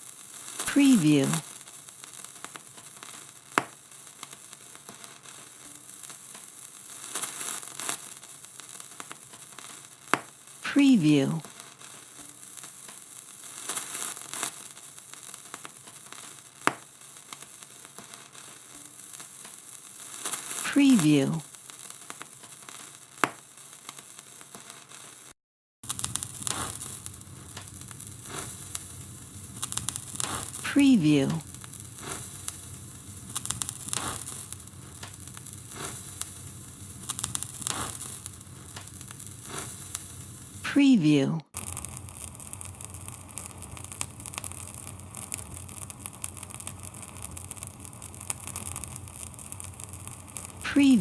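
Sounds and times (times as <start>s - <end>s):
vinyl record crackle: 0.0s - 51.0s
person saying a word: 0.7s - 1.4s, 10.6s - 11.4s, 20.6s - 21.5s, 30.6s - 31.4s, 40.6s - 41.5s, 50.7s - 51.0s
vinyl surface hiss and hum: 25.9s - 51.0s
vinyl clicks and pops: 33.3s - 36.2s.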